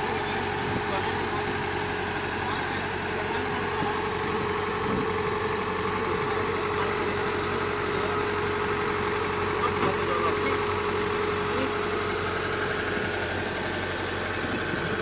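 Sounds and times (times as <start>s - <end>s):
machine engine idling: 0.0s - 15.0s.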